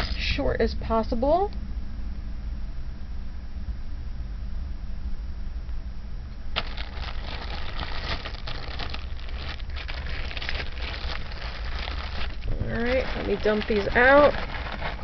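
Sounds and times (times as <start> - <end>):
steady low hum: 0.0 - 15.0
bag crinkling and rustling: 6.6 - 15.0.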